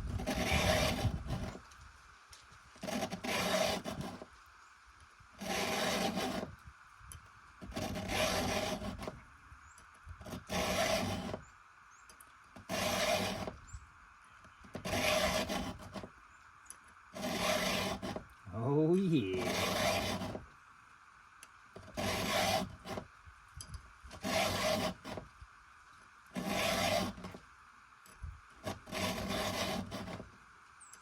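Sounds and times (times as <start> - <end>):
file rasping on chainsaw chain: 0.2 - 1.5, 2.8 - 4.2, 5.4 - 6.5, 7.7 - 9.1, 10.3 - 11.4, 12.7 - 13.6, 14.8 - 16.0, 17.2 - 18.2, 19.4 - 20.4, 21.9 - 23.0, 24.2 - 25.2, 26.4 - 27.3, 28.6 - 30.2.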